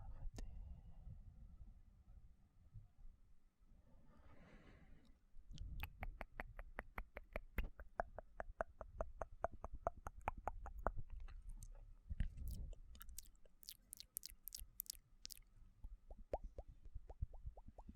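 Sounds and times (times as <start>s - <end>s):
wet mouth clicks: 5.5s - 15.5s, 16.1s - 17.9s.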